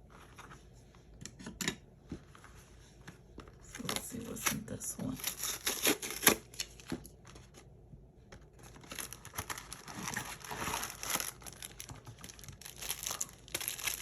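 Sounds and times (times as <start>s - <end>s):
packaging crinkling: 3.6s - 7.6s, 8.5s - 14.0s.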